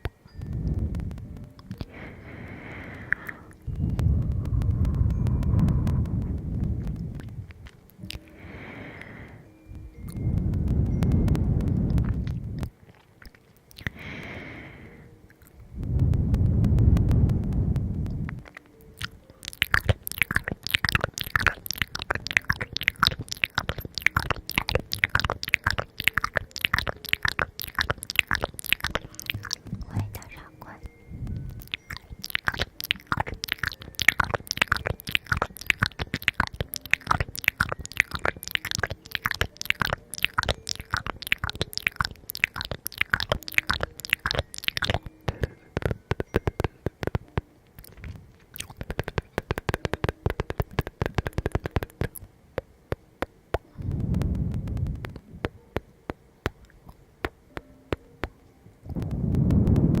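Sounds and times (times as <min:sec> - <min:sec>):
crunchy chewing: 0:00.0 - 0:15.7, 0:16.4 - 0:53.0
low muffled rumble: 0:00.4 - 0:01.6, 0:03.7 - 0:07.8, 0:15.7 - 0:18.5, 0:53.8 - 0:55.6, 0:58.9 - 1:00.0.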